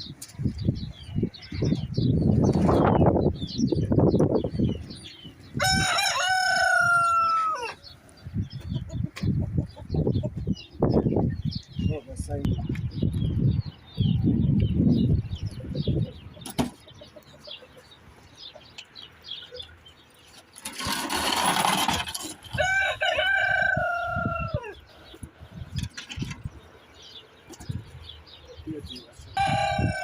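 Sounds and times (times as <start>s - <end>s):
small birds chirping: 0.0s - 21.2s, 22.6s - 30.0s
rooster crowing: 5.6s - 7.8s, 22.6s - 24.8s, 29.4s - 30.0s.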